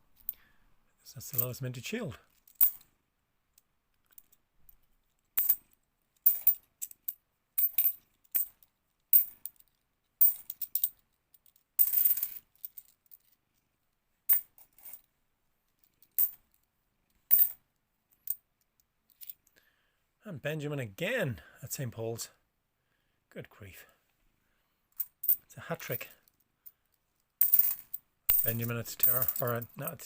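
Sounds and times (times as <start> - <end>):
coins clinking: 11.8 - 12.4, 27.4 - 30.0
coins rattling together: 11.8 - 12.9, 27.4 - 30.0.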